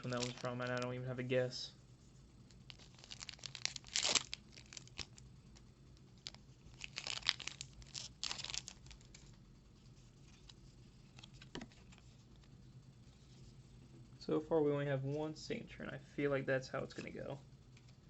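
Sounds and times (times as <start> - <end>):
foil wrapper tearing and crinkling: 0.0 - 0.9, 2.7 - 5.2, 6.2 - 9.2.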